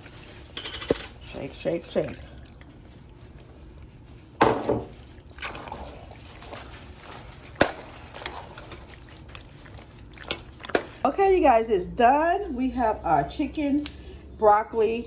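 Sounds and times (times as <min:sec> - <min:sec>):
water sloshing from a jar: 0:00.0 - 0:11.1.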